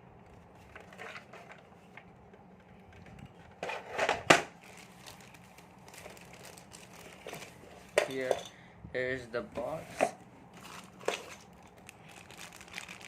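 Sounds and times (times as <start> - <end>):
packaging rustle: 4.4 - 8.3, 10.5 - 13.0.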